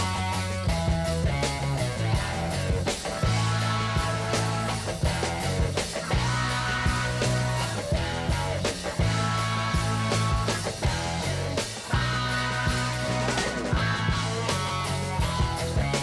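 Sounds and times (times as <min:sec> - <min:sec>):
guitar rock music: 0:00.0 - 0:16.0.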